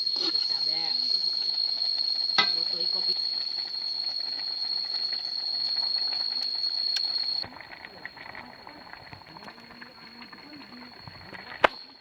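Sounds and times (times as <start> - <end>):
chicken sizzling in a pan: 0.0 - 12.0
click: 6.4 - 7.1.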